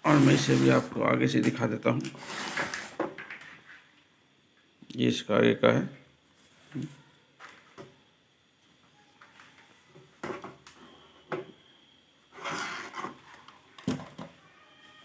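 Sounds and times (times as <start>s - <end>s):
speaker unit scraping: 0.0s - 1.1s.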